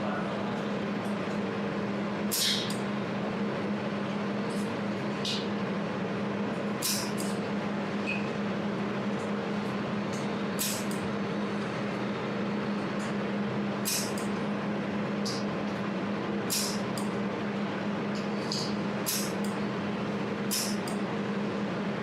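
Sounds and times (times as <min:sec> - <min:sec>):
laser welder humming: 0:06.5 - 0:08.0, 0:09.6 - 0:11.8, 0:12.4 - 0:22.0.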